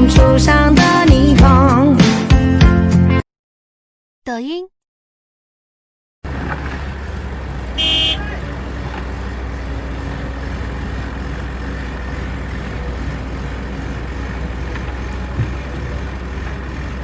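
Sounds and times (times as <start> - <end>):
heavy machine engine droning: 6.3 - 17.0.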